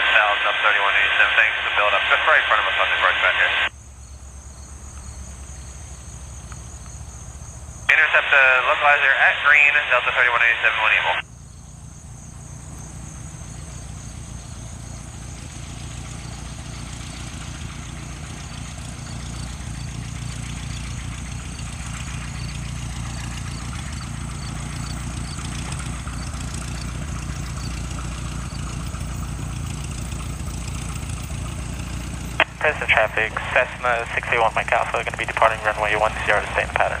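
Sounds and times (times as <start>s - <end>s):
propeller plane engine drone: 0.0s - 37.0s.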